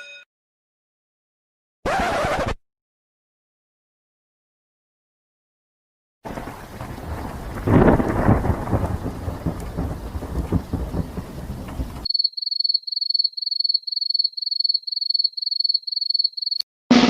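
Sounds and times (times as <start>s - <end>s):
loud thunder rumble: 6.3s - 12.1s
rain hiss: 6.3s - 12.1s.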